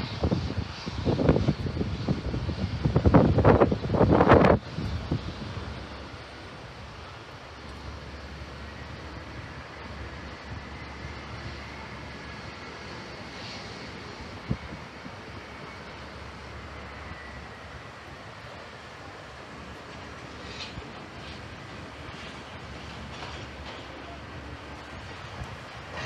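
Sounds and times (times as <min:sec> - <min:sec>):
faint high whine: 0:00.0 - 0:25.5
jet engine rumble: 0:00.0 - 0:26.0.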